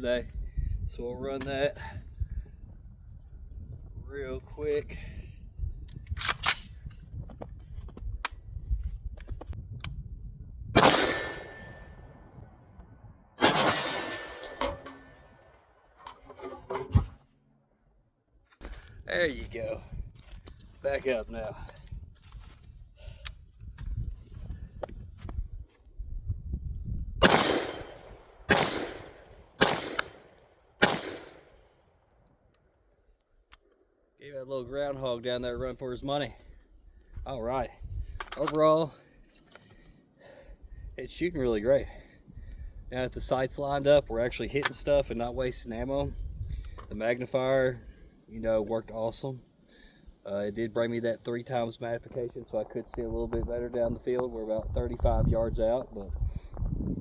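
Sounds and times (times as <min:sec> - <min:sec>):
rifle shot with echo: 0:10.8 - 0:12.4, 0:13.4 - 0:15.6, 0:27.2 - 0:31.6.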